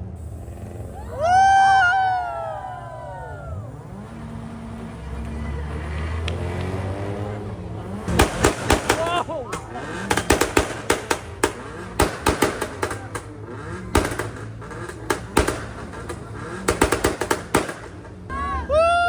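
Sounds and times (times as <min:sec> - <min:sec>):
engine revving: 0:00.0 - 0:18.8
loud rising-falling pitched sound: 0:00.2 - 0:06.9
exhaust popping and banging: 0:03.7 - 0:18.3.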